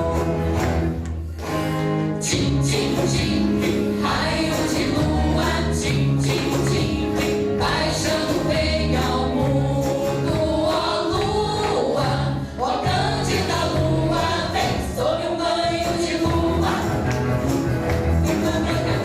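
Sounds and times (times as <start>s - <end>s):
group of voices singing: 0.0s - 1.0s, 2.2s - 19.0s
live band playing: 0.0s - 19.0s.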